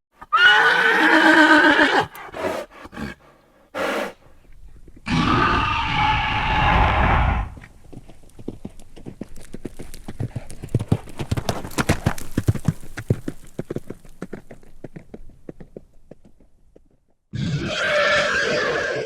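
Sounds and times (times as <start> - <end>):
horse hooves clopping: 4.2 - 5.3, 7.5 - 17.2.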